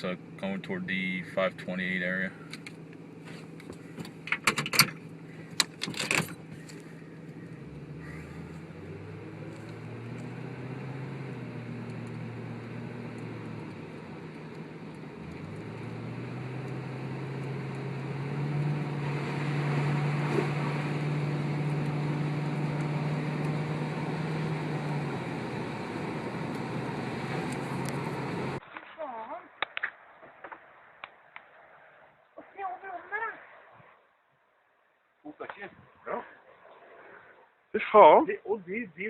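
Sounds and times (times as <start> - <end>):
car engine: 0.0 - 28.6
road noise: 0.0 - 34.2.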